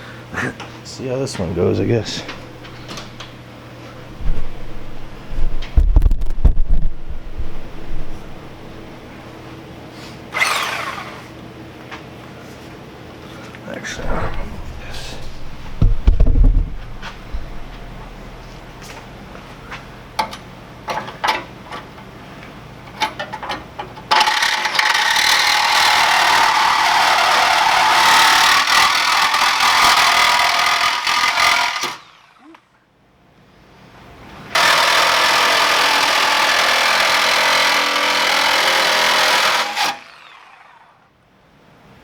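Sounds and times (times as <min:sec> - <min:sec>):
power saw cutting sheet metal: 0:10.3 - 0:11.3, 0:24.1 - 0:32.6, 0:34.6 - 0:41.0
clicks and knocks: 0:14.0 - 0:17.9.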